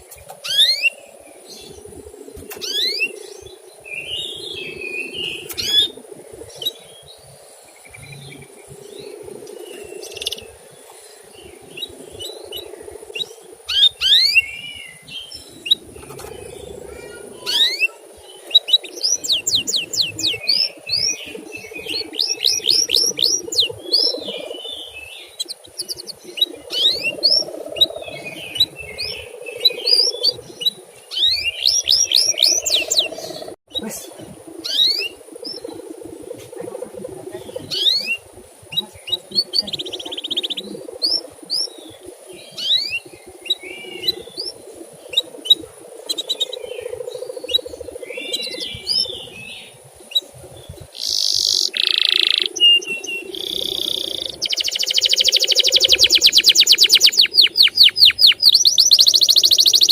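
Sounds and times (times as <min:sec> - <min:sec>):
canary chirping: 0:11.7 - 0:33.8, 0:51.0 - 0:59.9.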